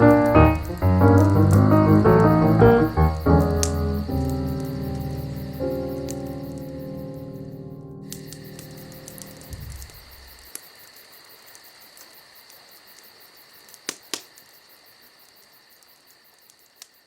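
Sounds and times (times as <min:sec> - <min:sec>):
piano music: 0:00.0 - 0:09.6
wood fire popping: 0:00.0 - 0:14.7
insects chirping: 0:00.0 - 0:17.0.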